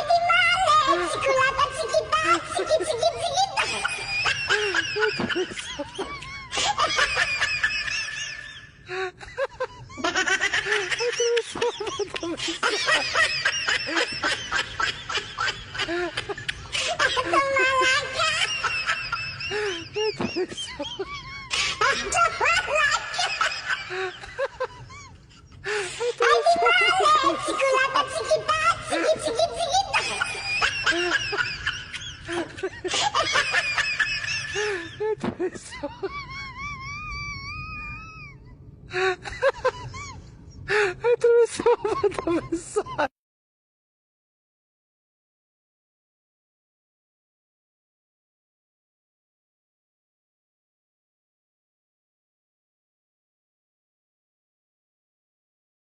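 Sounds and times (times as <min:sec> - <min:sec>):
high-pitched laughing: 0:00.0 - 0:08.8, 0:09.4 - 0:38.4.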